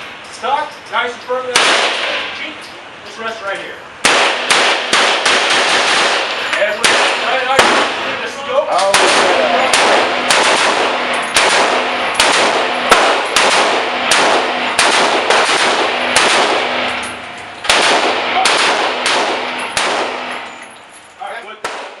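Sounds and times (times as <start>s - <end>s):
rifle gunshots with echo: 1.5s - 2.3s, 4.0s - 8.2s, 8.8s - 20.5s, 21.6s - 22.0s.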